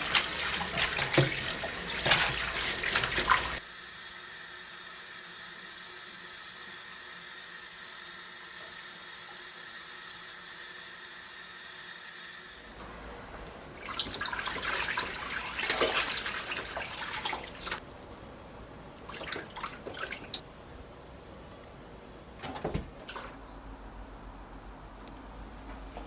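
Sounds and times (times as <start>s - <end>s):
splashing in water: 0.0s - 3.6s, 13.8s - 17.8s, 19.1s - 20.4s
tap water running into sink: 0.0s - 3.6s, 13.7s - 17.8s.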